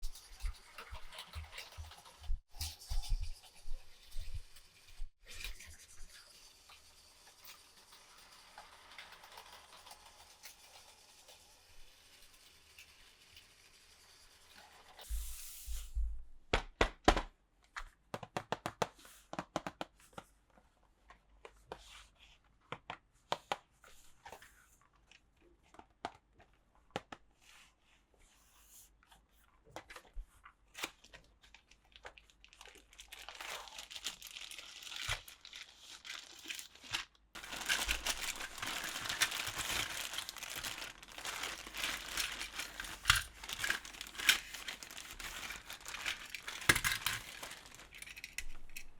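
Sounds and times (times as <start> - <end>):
wrapping crinkling and tearing: 30.8 - 48.9.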